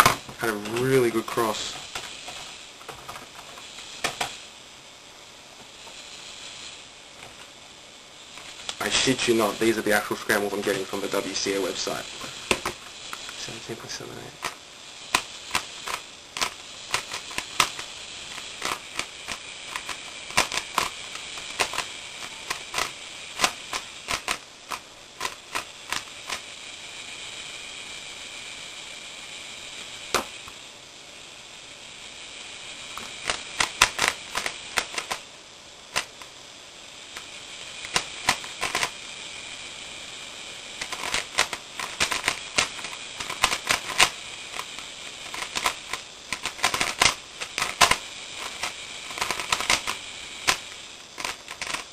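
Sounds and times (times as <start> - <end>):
puzzle cube clicking and snapping: 14.4 - 26.4, 33.0 - 35.2, 36.0 - 36.3, 37.8 - 38.9, 40.8 - 51.9.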